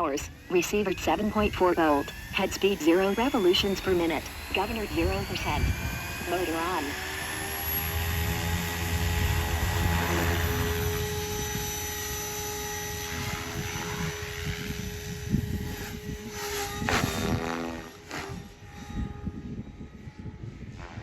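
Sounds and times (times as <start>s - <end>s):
helicopter rotor beat: 0.0s - 21.0s
high motor whine: 0.0s - 21.0s.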